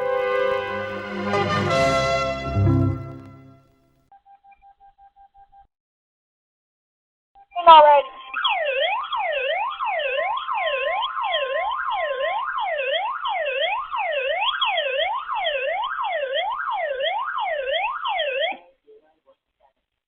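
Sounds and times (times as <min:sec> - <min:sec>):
emergency alert wail: 0:00.0 - 0:03.5, 0:08.0 - 0:18.6.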